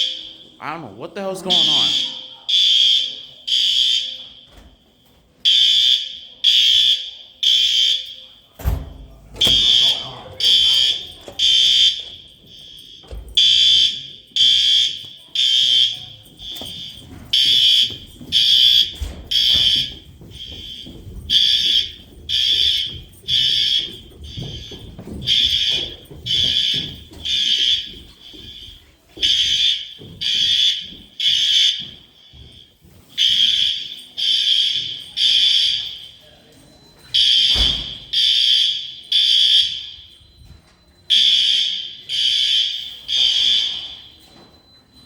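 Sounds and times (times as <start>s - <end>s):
faint steady alarm tone: 0.0s - 45.0s
fire alarm beeps: 0.0s - 45.0s.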